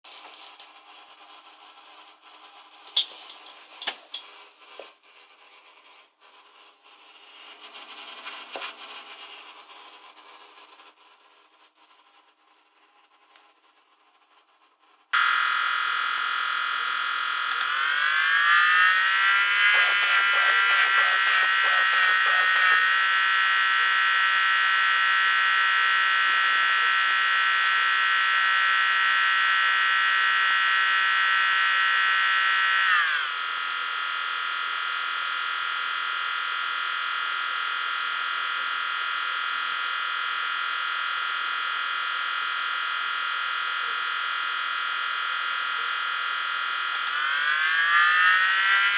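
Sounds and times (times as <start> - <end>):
high-pitched electronic whine: 15.2 - 48.9.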